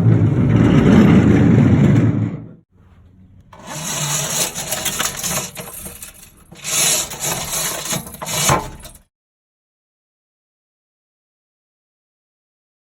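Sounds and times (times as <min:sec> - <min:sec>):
rough scraping and rubbing: 0:03.6 - 0:09.0.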